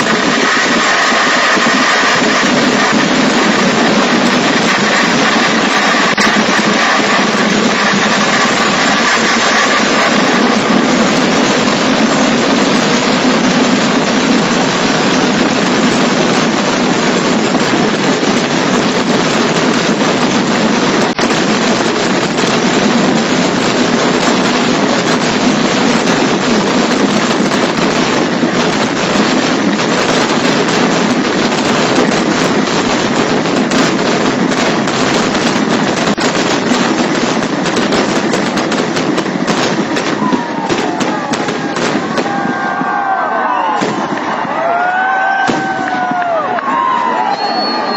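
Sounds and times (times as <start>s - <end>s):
firecrackers crackling rapidly: 0.0s - 47.9s.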